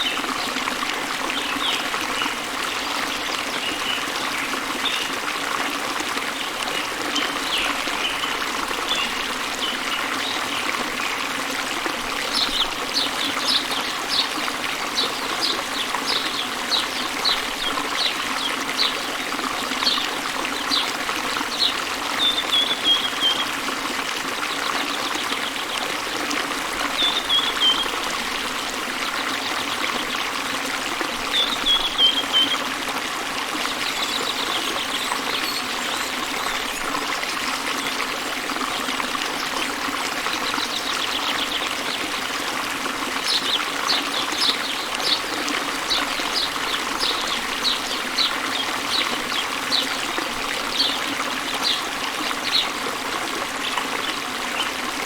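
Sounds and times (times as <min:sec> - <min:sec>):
waterfall and river water running: 0:00.0 - 0:55.0
small birds chirping: 0:12.2 - 0:23.5, 0:26.9 - 0:28.0, 0:43.2 - 0:52.8.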